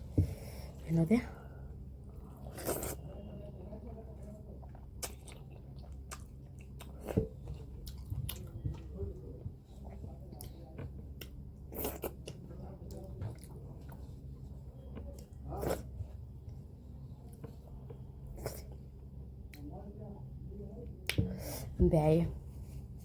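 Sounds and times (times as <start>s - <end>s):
steady low hum: 0.0s - 23.0s
person chewing: 2.1s - 3.1s, 4.2s - 9.0s, 9.7s - 16.2s.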